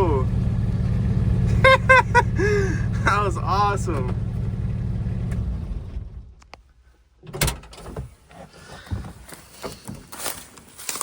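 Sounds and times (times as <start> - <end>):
small engine running: 0.0 - 5.9.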